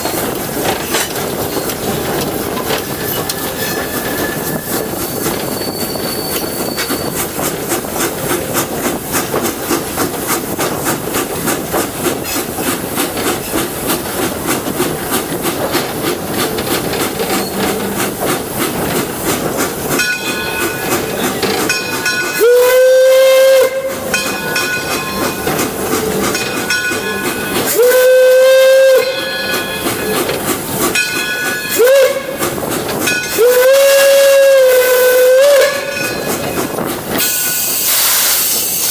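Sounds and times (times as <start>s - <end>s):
steam locomotive running: 0.0s - 38.9s
steam whistle: 22.4s - 24.1s, 27.6s - 30.2s, 31.7s - 32.4s, 33.3s - 36.1s, 37.2s - 38.9s.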